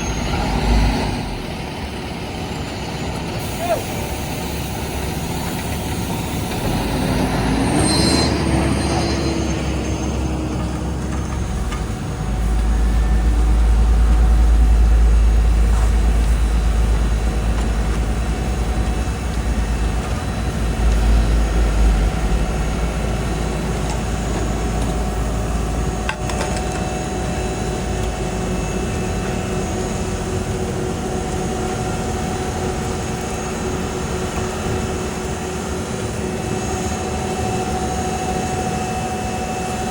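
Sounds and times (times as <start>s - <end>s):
heavy diesel machinery running: 0.0s - 39.9s.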